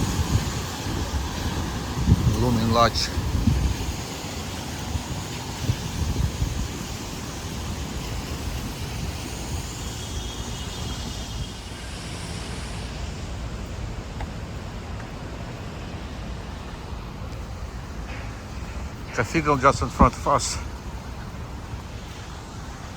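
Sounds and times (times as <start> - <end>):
wind on microphone: 0.0 - 12.4
city street traffic: 0.0 - 22.9
high hiss: 0.0 - 22.9.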